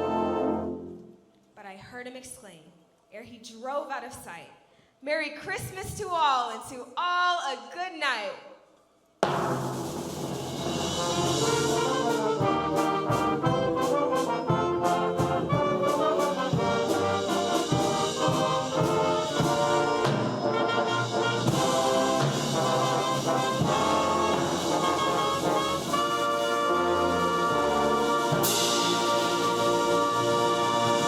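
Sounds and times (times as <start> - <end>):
concert band with brass: 0.0 - 1.1, 9.2 - 31.0
percussion strikes: 9.2 - 31.0.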